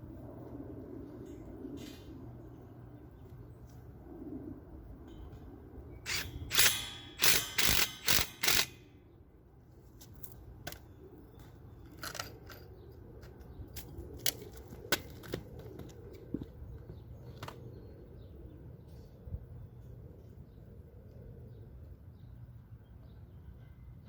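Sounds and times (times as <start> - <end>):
power driver bursts: 6.1 - 8.8.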